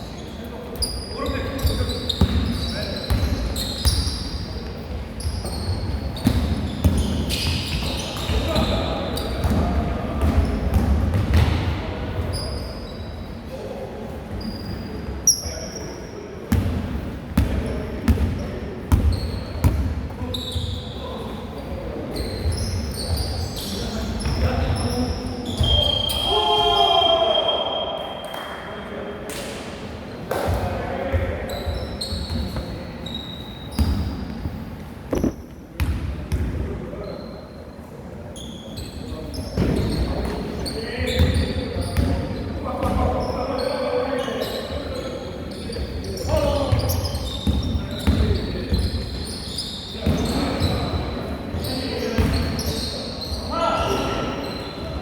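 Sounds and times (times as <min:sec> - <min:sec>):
sneakers squeaking on court: 0:00.0 - 0:13.4, 0:16.5 - 0:16.8, 0:17.4 - 0:21.2, 0:22.1 - 0:26.3, 0:31.2 - 0:37.6, 0:38.4 - 0:43.4, 0:44.2 - 0:55.0
basketball bouncing on gym floor: 0:09.4 - 0:11.7, 0:35.1 - 0:36.5
basketball bouncing: 0:35.1 - 0:36.0.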